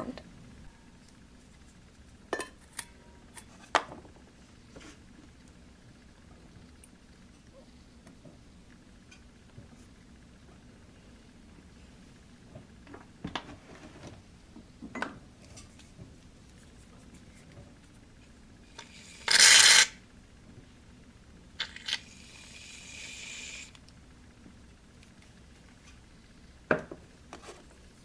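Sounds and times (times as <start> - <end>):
steady hiss: 21.6 - 23.9.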